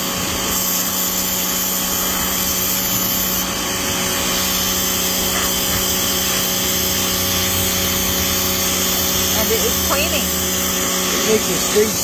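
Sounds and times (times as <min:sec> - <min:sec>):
pressure washer motor humming: 0:00.0 - 0:12.0.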